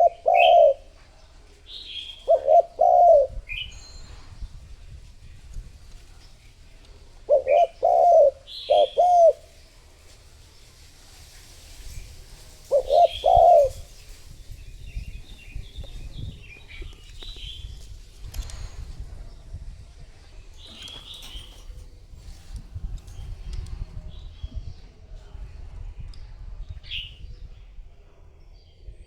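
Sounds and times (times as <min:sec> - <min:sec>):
dove cooing: 0:00.0 - 0:01.0, 0:01.9 - 0:03.7, 0:07.2 - 0:09.6, 0:12.6 - 0:14.1
small birds chirping: 0:00.0 - 0:04.7, 0:05.4 - 0:10.8, 0:11.8 - 0:25.1.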